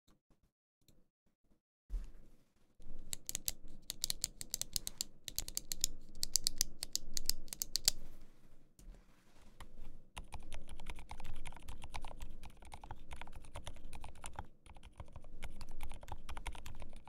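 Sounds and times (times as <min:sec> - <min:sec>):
mechanical keyboard typing: 0:03.1 - 0:08.0, 0:10.2 - 0:17.0.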